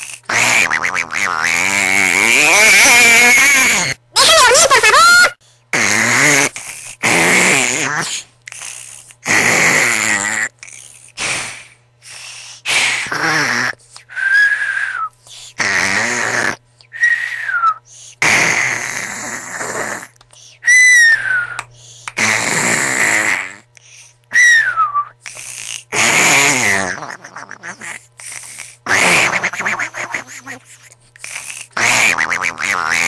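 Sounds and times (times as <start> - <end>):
person snoring: 5.8 - 17.4, 18.1 - 24.2, 25.2 - 33.0.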